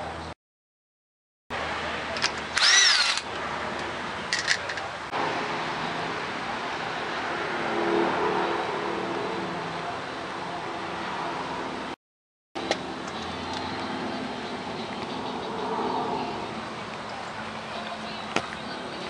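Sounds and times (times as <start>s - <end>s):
power tool whine: 2.6s - 3.3s.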